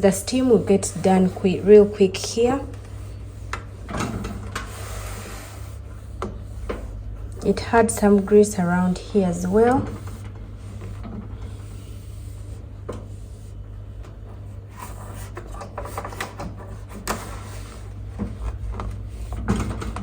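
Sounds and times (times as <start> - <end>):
cloth wiping inside microwave: 0.0 - 15.9
steady low hum: 0.0 - 20.0.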